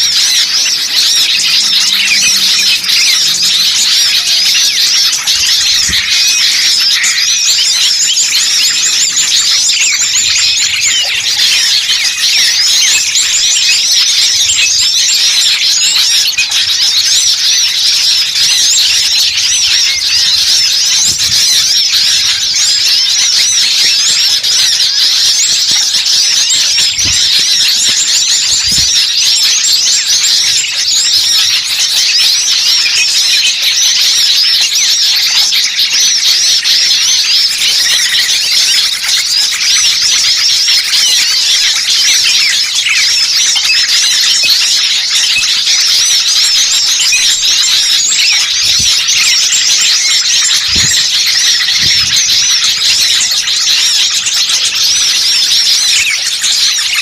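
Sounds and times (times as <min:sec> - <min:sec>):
songbirds chirping and twittering: 0:00.0 - 0:57.0.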